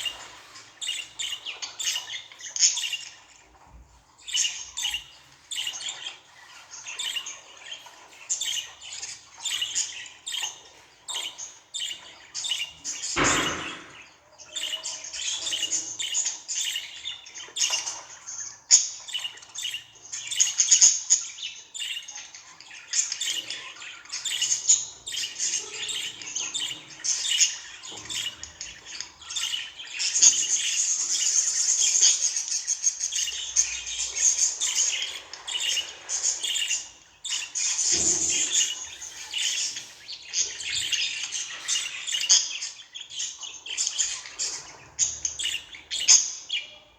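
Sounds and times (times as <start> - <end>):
budgerigars chirping: 0.0 - 46.9
short thump: 13.2 - 14.0.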